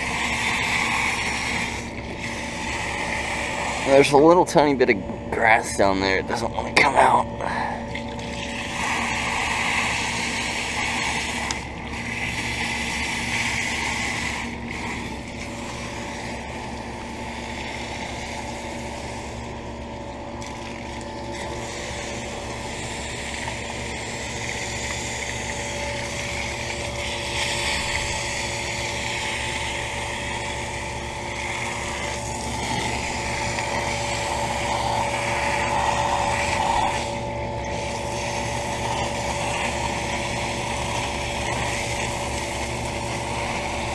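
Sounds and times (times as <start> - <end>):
air conditioner unit humming: 0.0 - 43.9.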